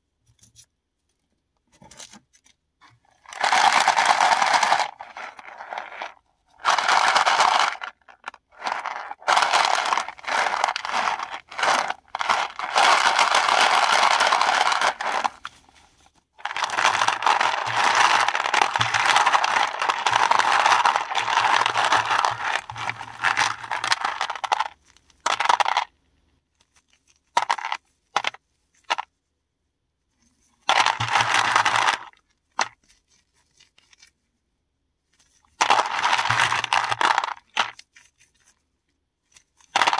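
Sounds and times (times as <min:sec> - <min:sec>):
tablets being crushed and ground: 0:03.2 - 0:15.6, 0:16.4 - 0:26.0, 0:27.2 - 0:29.1, 0:30.6 - 0:32.8, 0:35.5 - 0:37.8, 0:39.3 - 0:39.9.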